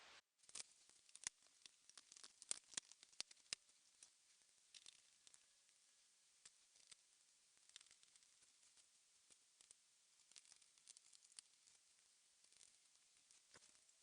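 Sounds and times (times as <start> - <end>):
small parts and screws clicking: 0.4 - 4.1, 4.7 - 5.5, 7.6 - 11.8.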